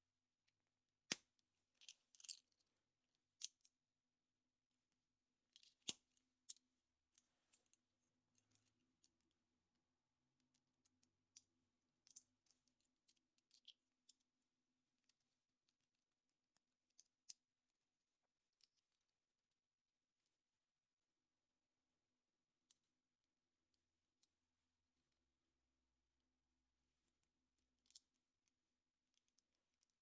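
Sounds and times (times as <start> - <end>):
small plastic clicks: 1.1 - 3.8, 5.5 - 9.4, 10.4 - 14.3, 16.5 - 17.5, 27.2 - 30.0.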